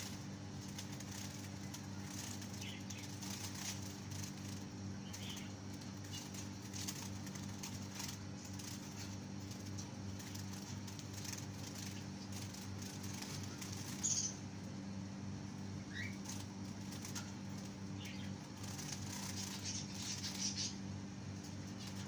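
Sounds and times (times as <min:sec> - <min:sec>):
finches fluttering wings: 0:00.0 - 0:14.8, 0:15.9 - 0:20.8
steady low hum: 0:00.0 - 0:22.0
finch chirps: 0:05.0 - 0:06.4, 0:13.8 - 0:14.4, 0:15.9 - 0:16.2, 0:18.0 - 0:18.4, 0:19.1 - 0:20.8.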